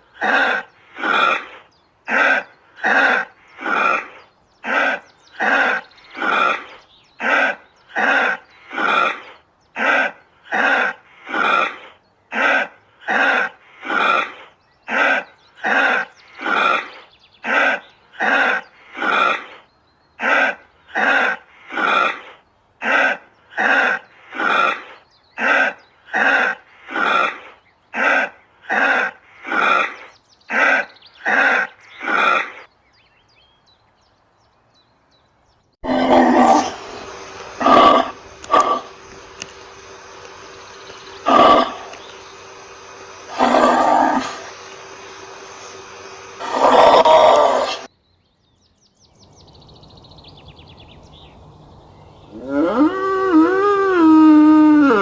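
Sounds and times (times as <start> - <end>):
animal harsh grunting calls: 0.0 - 32.7, 35.8 - 40.2, 41.1 - 47.9
loud animal sound: 0.0 - 32.7, 35.8 - 47.9, 52.3 - 55.0
long rising animal call: 35.8 - 47.9, 52.3 - 55.0.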